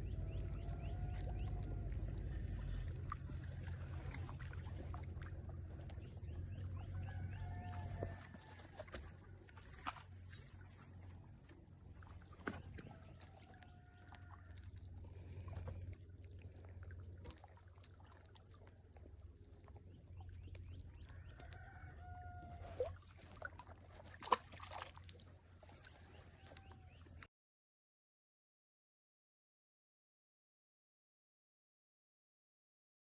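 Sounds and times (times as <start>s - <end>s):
low steady rumble: 0.0s - 24.2s
rooster crowing: 0.1s - 1.9s, 6.8s - 8.8s, 21.1s - 23.0s.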